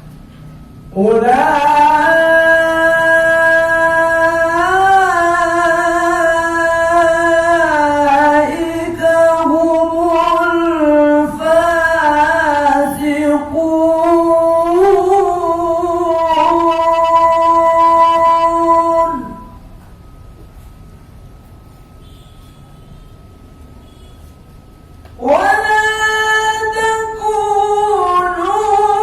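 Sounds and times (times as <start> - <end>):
man reciting in melodic chant: 0.9 - 19.6, 25.2 - 29.0.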